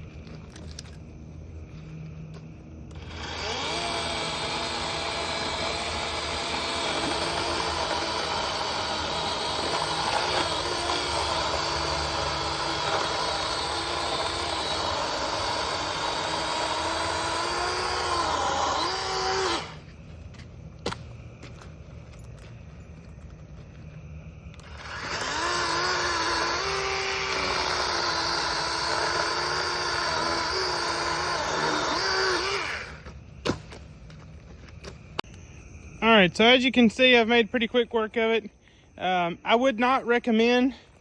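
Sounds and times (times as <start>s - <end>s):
electric chainsaw cutting wood: 2.9s - 20.0s, 24.6s - 33.6s.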